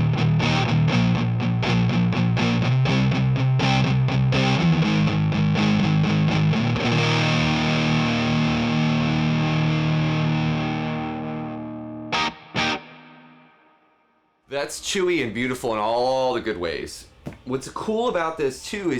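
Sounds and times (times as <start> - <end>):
fuzz electric guitar chords: 0.0 - 13.8.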